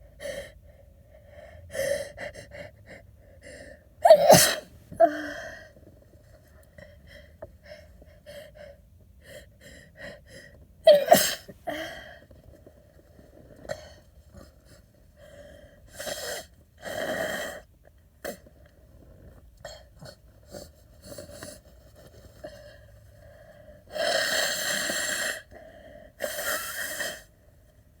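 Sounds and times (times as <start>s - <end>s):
person sneezing: 4.0s - 5.3s, 10.9s - 11.8s.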